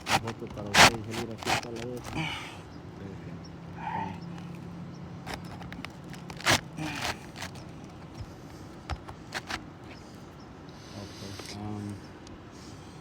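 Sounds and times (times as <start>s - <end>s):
taps and knocks on roof shingle: 0.0s - 2.3s, 5.3s - 10.0s.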